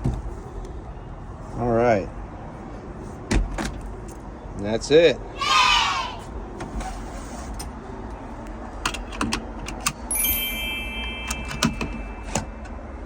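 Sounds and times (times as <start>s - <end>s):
brief metallic ring: 10.1s - 12.7s.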